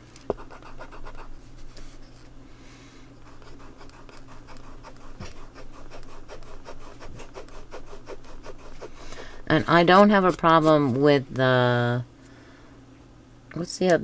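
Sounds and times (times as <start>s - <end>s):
eraser rubbing on paper: 0.3s - 2.0s, 3.2s - 10.8s.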